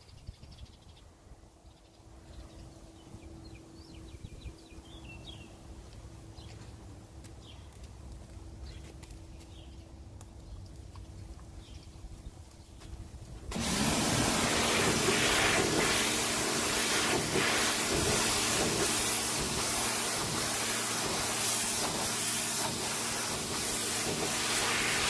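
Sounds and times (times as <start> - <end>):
small birds chirping: 0.0 - 5.6, 6.3 - 7.8, 8.6 - 13.0.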